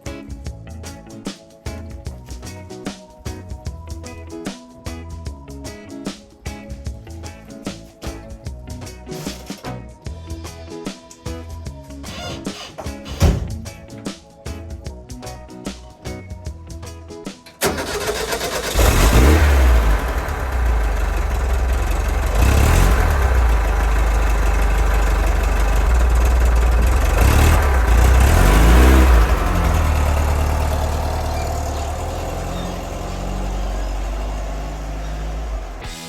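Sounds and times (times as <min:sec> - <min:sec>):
air-cooled engine revving: 0:17.6 - 0:36.0.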